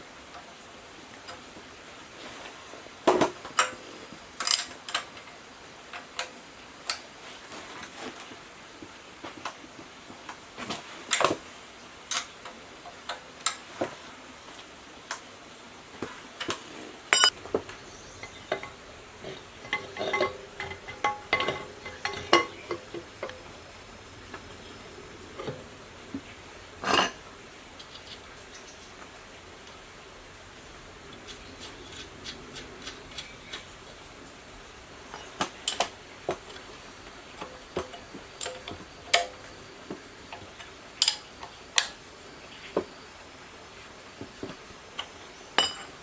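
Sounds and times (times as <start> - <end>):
metal parts and tools clinking: 4.4 - 5.1, 17.1 - 24.7, 26.8 - 27.2, 34.9 - 39.5, 45.6 - 46.0.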